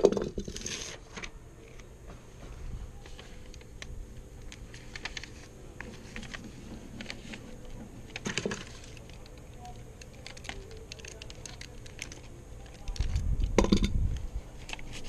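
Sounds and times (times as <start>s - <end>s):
tape rubbing and bumping: 0.0s - 1.2s
tape clicking and crinkling: 3.0s - 15.0s.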